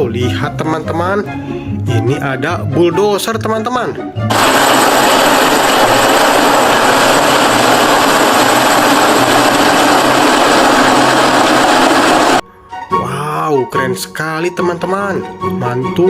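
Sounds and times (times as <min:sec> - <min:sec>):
bulldozer engine running: 0:04.3 - 0:12.4.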